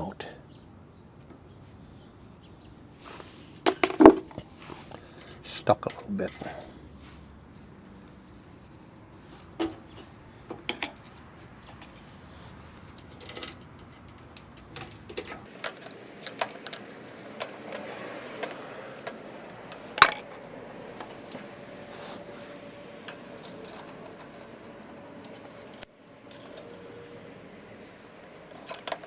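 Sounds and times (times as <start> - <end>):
metallic clinks of tools: 5.1 - 6.8, 23.1 - 26.9.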